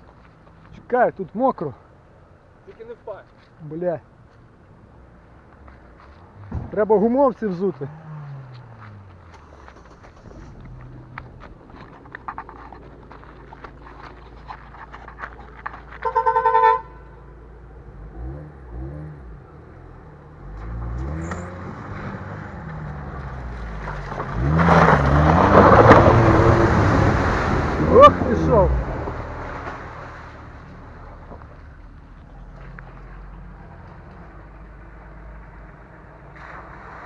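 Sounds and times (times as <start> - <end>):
car engine revving: 6.2 - 13.9, 15.6 - 37.0
car horn: 15.9 - 17.4.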